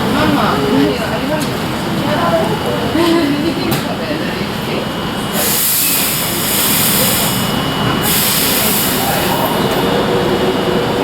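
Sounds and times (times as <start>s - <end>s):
train rushing noise: 0.0s - 11.0s
bright hiss: 5.3s - 9.8s.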